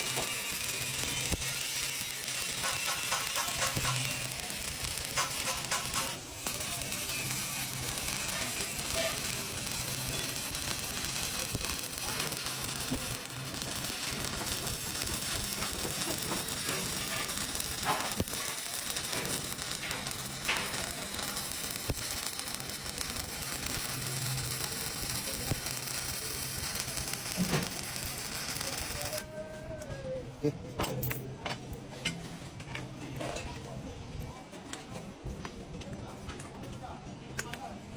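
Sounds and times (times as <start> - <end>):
welding arc sizzling: 0.0 - 29.3.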